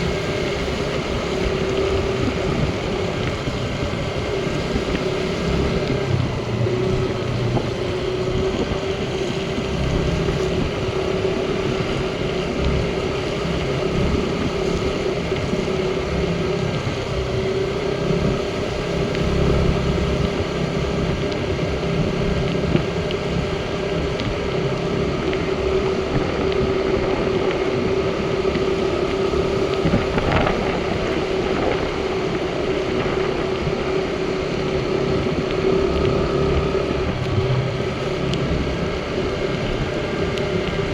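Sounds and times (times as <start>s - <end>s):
motorcycle engine running: 0.0s - 40.9s
wind buffeting microphone: 0.0s - 40.9s.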